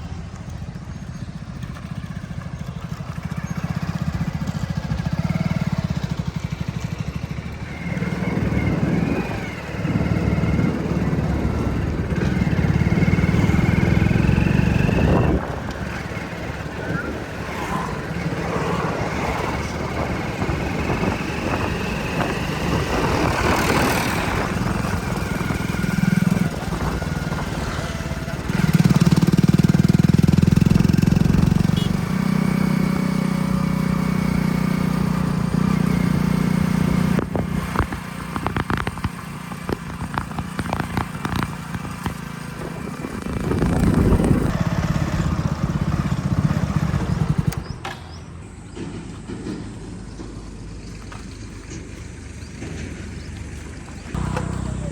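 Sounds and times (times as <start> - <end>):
diesel engine droning: 0.0 - 54.9
knocks and clatters: 47.2 - 54.8.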